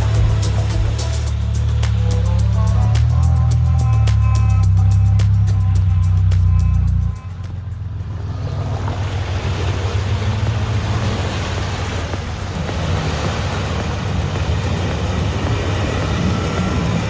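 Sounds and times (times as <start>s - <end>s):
constant rushing noise: 0.0s - 17.0s
off-road vehicle engine running: 0.0s - 17.0s.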